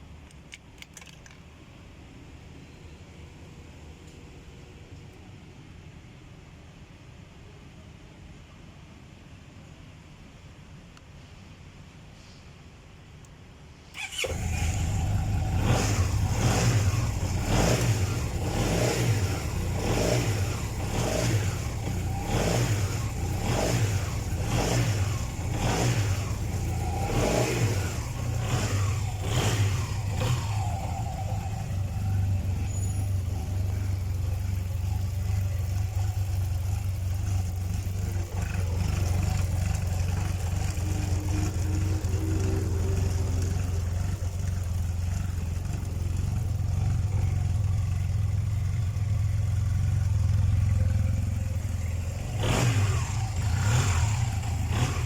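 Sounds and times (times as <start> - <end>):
scooter engine revving and idling: 14.0 - 55.0.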